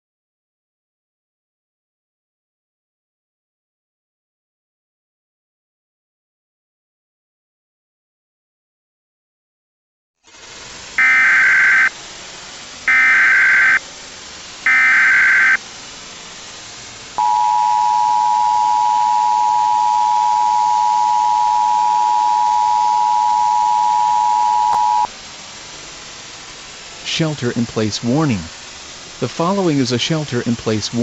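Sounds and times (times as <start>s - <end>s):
constant hiss: 10.2s - 31.0s
two-tone attention signal: 11.0s - 11.9s, 12.9s - 13.8s, 14.7s - 15.6s, 17.2s - 25.1s
warbling data tone bursts: 11.0s - 12.0s, 12.8s - 13.8s, 14.6s - 15.6s, 17.2s - 25.1s.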